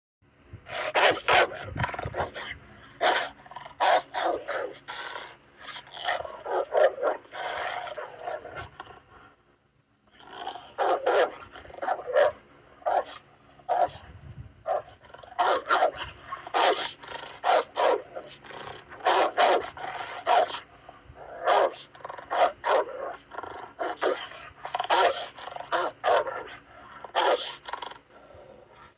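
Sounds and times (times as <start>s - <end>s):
dog barking: 14.7s - 18.1s, 21.4s - 23.0s, 24.9s - 26.5s, 27.1s - 27.5s.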